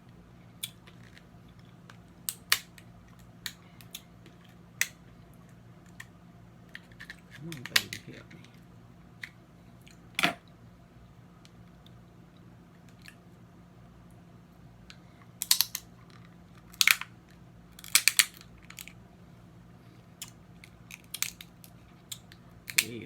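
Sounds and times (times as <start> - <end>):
crab shells cracking and crunching: 0.6 - 5.0, 15.4 - 19.0, 20.2 - 23.0
shell snapping: 2.3 - 2.8, 15.4 - 15.9, 17.8 - 18.9, 20.2 - 21.5, 22.1 - 23.0
small shell clicks: 2.3 - 4.1, 15.4 - 17.1, 17.8 - 19.0, 20.2 - 23.0.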